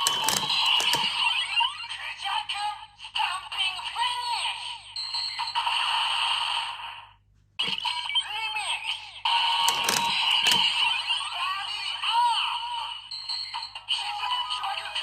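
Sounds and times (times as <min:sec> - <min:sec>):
toy electronic sound effects: 0:00.0 - 0:01.7, 0:09.6 - 0:11.1.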